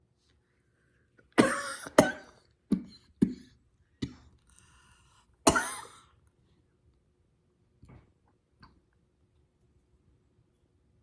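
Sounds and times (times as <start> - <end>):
woman coughing: 1.4 - 2.4, 5.5 - 6.0.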